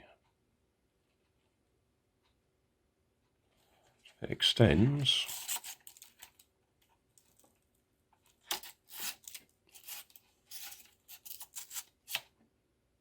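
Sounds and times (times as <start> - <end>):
monopod sections scraping and clicking: 5.0 - 12.4.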